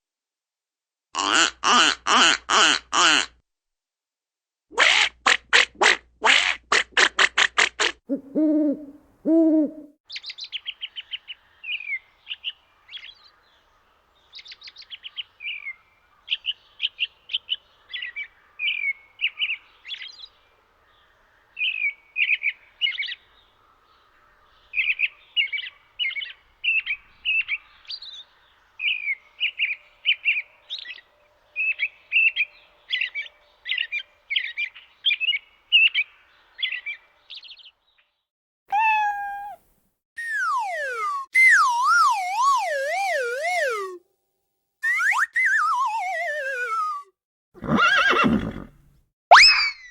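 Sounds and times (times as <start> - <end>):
songbird chirping: 8.1 - 44.0
short falling whistle: 40.2 - 44.0, 44.8 - 47.1, 49.3 - 49.8.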